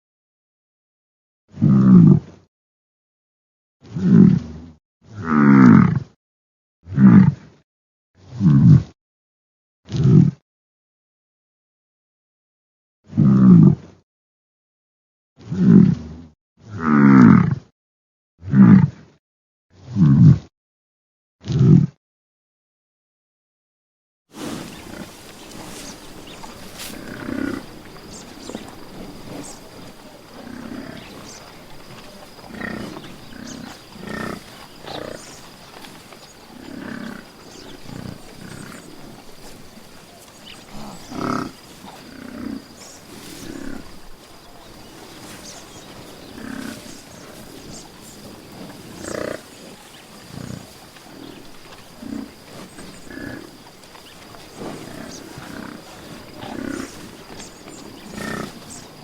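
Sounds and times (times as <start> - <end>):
animal short low calls: 24.4 - 59.0.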